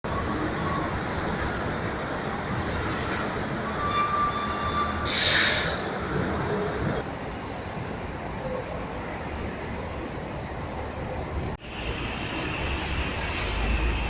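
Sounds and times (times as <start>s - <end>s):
tram rumbling on track: 0.0s - 14.0s
loud hiss: 5.1s - 6.0s.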